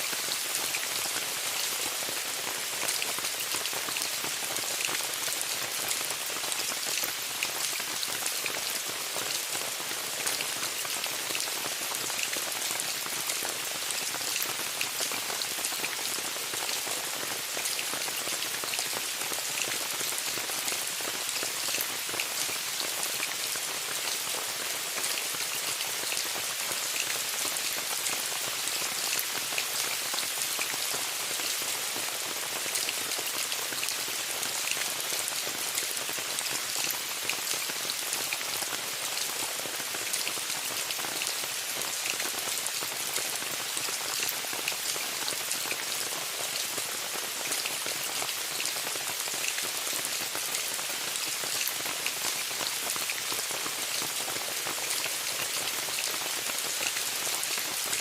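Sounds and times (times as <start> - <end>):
rain on a tent: 0.0 - 58.0.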